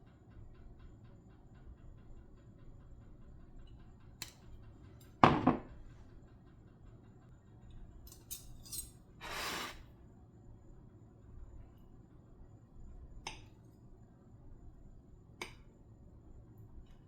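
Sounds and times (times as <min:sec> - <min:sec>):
dishes knocking and clinking: 0:05.0 - 0:05.9.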